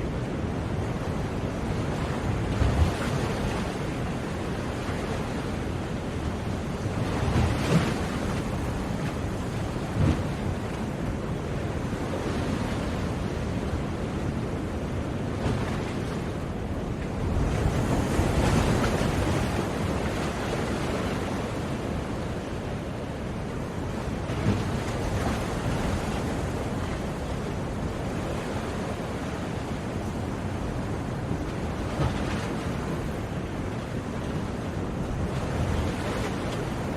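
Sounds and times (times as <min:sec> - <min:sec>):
waves breaking on shore: 0:00.0 - 0:36.9.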